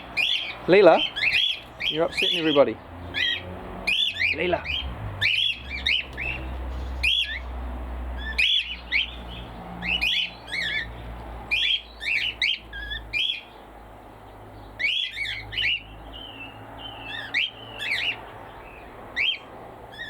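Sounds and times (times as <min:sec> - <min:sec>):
cockatiels squawking: 0:00.0 - 0:07.6, 0:08.2 - 0:13.5, 0:14.8 - 0:15.9, 0:17.1 - 0:18.3, 0:19.2 - 0:20.0.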